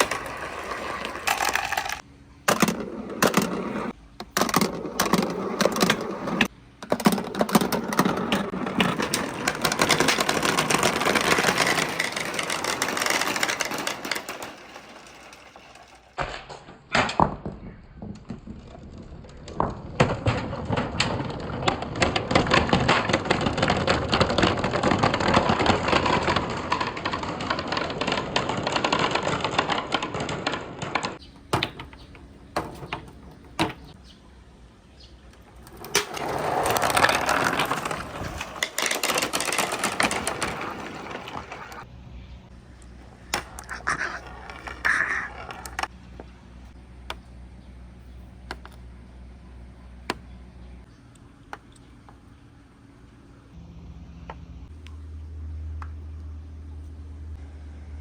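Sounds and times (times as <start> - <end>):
marbles rattling down a track: 8.9 - 16.1, 35.8 - 41.8.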